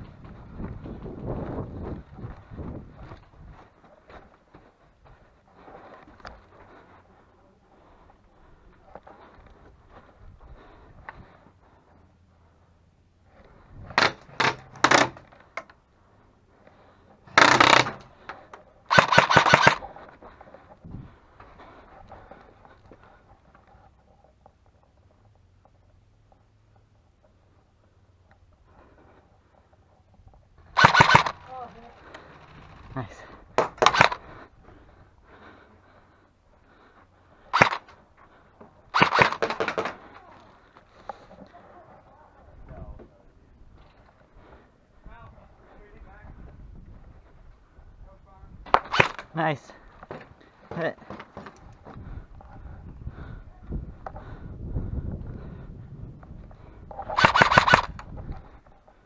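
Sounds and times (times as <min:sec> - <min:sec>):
airsoft gun firing: 0:17.4 - 0:18.0, 0:18.9 - 0:20.0, 0:30.7 - 0:34.3, 0:37.6 - 0:38.0, 0:38.9 - 0:40.2, 0:48.7 - 0:49.4, 0:57.0 - 0:58.0.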